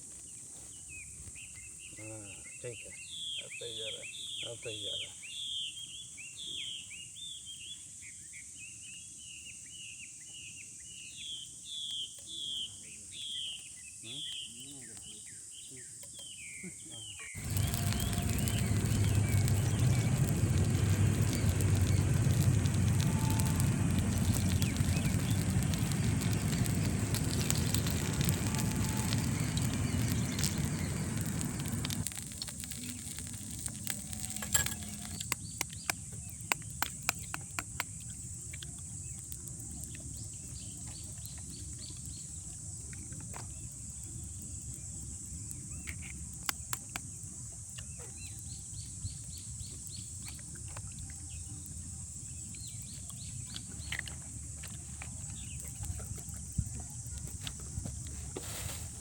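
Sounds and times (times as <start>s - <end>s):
wood fire roaring: 17.4s - 37.8s
fire crackling and popping: 17.4s - 59.0s.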